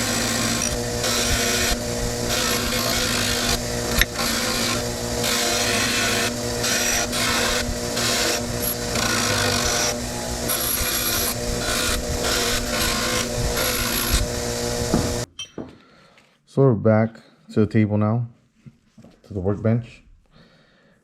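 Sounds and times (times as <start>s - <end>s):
wire wheel motor humming: 0.0s - 15.3s
wire wheel scratching metal: 0.0s - 15.3s.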